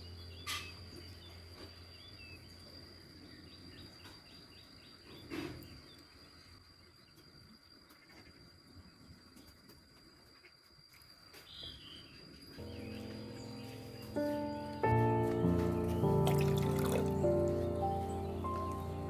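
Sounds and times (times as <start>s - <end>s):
bird chirps: 0.0s - 6.0s, 11.4s - 19.0s
high insect drone: 9.4s - 19.0s.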